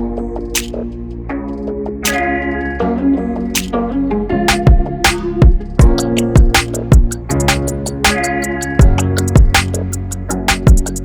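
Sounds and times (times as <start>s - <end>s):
sharp percussion hits: 4.5s - 9.9s.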